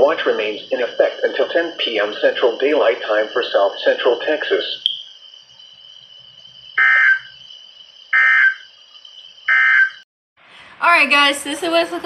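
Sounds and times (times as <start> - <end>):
buzzy digital data bursts: 6.8 - 7.4, 8.1 - 8.6.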